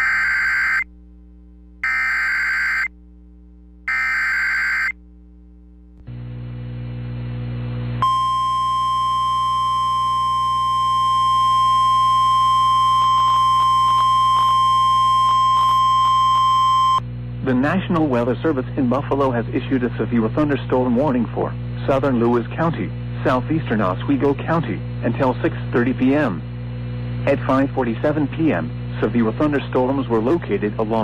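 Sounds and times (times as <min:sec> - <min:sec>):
screechy digital data bursts: 0:00.0 - 0:00.8, 0:01.8 - 0:02.9, 0:03.9 - 0:04.9
loud steady attention tone: 0:00.0 - 0:01.0, 0:01.8 - 0:05.0, 0:08.0 - 0:17.0
low hum: 0:00.0 - 0:30.9.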